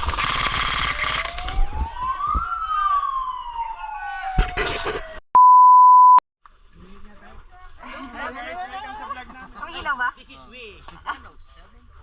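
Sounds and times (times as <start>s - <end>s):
siren wailing: 1.2s - 5.2s.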